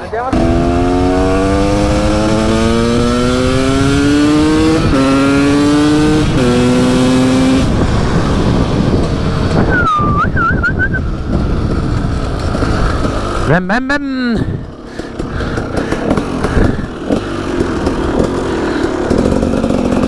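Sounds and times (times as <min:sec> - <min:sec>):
two-stroke engine accelerating: 0:00.0 - 0:20.0
wavering high tone: 0:09.7 - 0:11.0.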